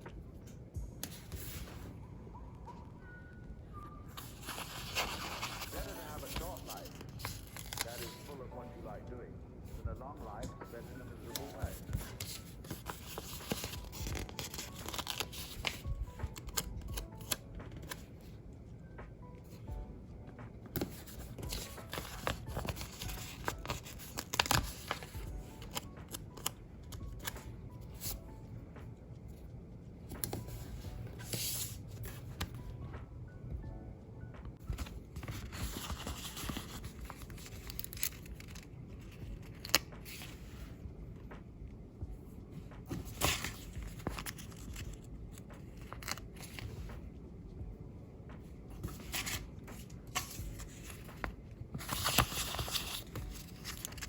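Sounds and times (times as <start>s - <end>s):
faint music: 0.0s - 54.0s
paper rustling: 4.2s - 8.7s, 10.3s - 18.2s, 20.6s - 28.2s, 34.6s - 40.8s, 42.9s - 47.0s, 48.8s - 54.0s.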